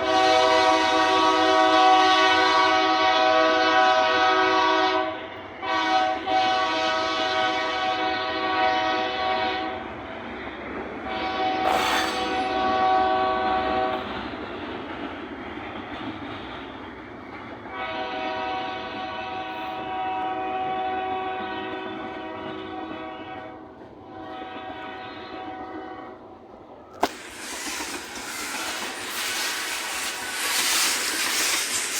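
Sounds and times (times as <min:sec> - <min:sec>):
locomotive air horn blasts: 0:00.0 - 0:09.8, 0:11.1 - 0:14.1, 0:17.7 - 0:26.2
passing train noise: 0:00.0 - 0:31.9.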